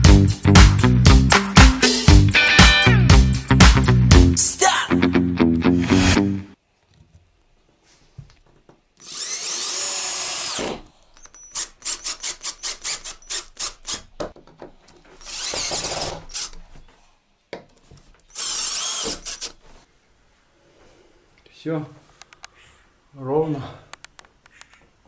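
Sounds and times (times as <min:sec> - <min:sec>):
quick short drill pulses: 0:09.0 - 0:14.0, 0:15.2 - 0:16.6, 0:18.3 - 0:19.6
cordless drill driving screws: 0:09.0 - 0:14.2, 0:15.2 - 0:16.7, 0:18.3 - 0:19.7.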